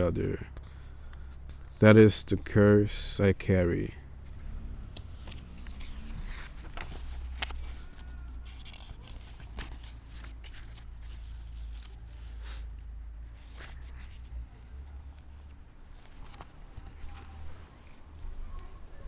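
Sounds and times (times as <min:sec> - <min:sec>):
faint rustling: 0:03.9 - 0:19.0.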